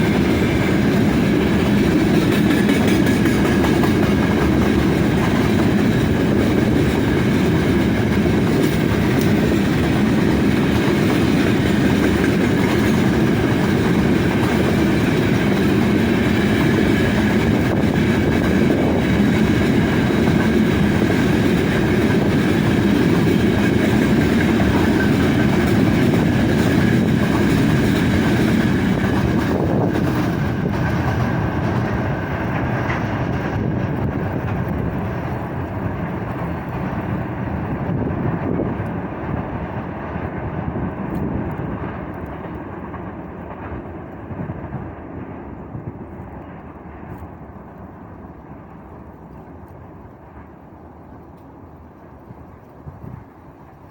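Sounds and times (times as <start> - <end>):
freight train wheels rumbling on rails: 0.0 - 53.9.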